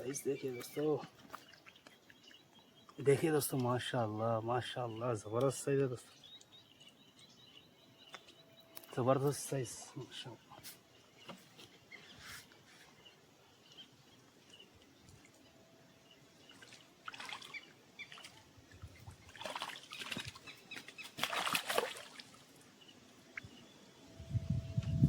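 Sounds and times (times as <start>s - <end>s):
water splashing: 16.4s - 22.6s.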